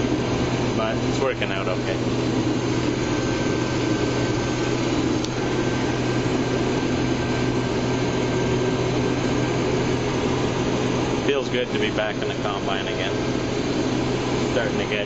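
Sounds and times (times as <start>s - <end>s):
combine harvester drone: 0.0s - 15.0s.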